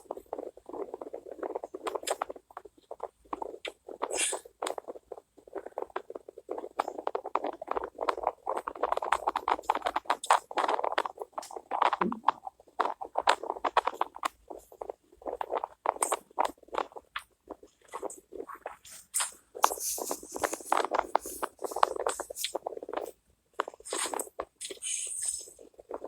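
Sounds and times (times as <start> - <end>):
rustling and scratching: 0.0 - 26.0
quick clicks and scrapes: 0.4 - 26.0.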